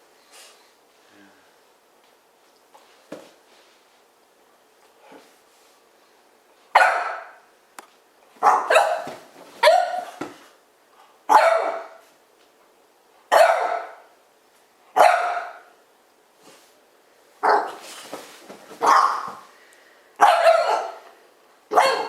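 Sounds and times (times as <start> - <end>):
dog barking: 6.7 - 7.4, 8.4 - 10.2, 11.3 - 12.0, 13.3 - 14.1, 15.0 - 15.7, 17.4 - 17.8, 18.8 - 19.4, 20.2 - 21.1, 21.7 - 22.0.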